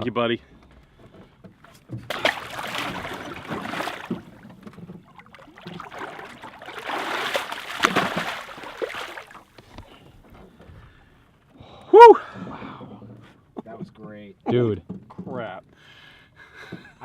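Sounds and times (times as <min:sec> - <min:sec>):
water splashing: 0:01.6 - 0:10.0
sharp water slaps: 0:02.0 - 0:09.6.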